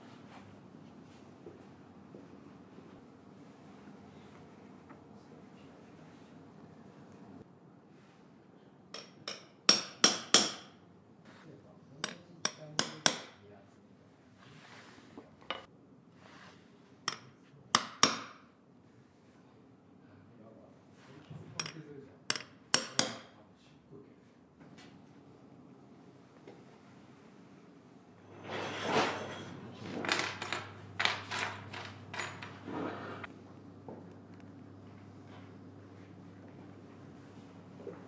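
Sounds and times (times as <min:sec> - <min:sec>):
hammer tapping metal: 0:09.0 - 0:10.8, 0:12.0 - 0:13.4, 0:17.1 - 0:18.4, 0:21.6 - 0:23.4.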